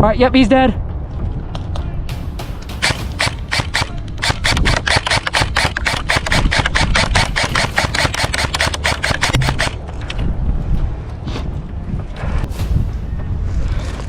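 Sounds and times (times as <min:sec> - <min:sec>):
airsoft guns firing rapidly: 0:02.7 - 0:09.8.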